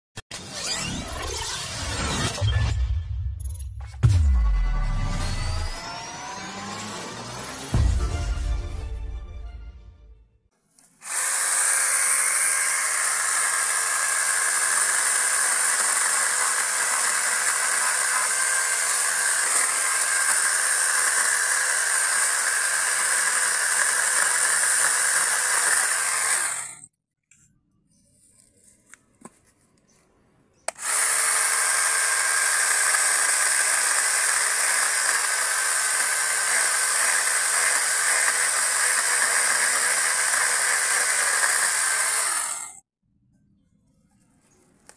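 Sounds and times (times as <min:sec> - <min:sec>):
chainsaw cutting bamboo: 0:05.5 - 0:08.1, 0:10.9 - 0:26.9, 0:30.7 - 0:42.8.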